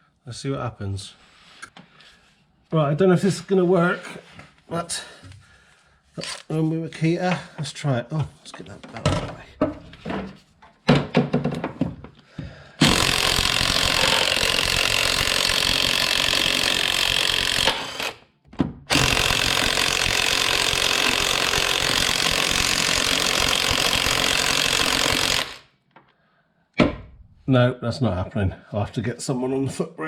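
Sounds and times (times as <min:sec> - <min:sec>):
impact wrench hammering: 0:12.8 - 0:18.2, 0:18.9 - 0:25.6.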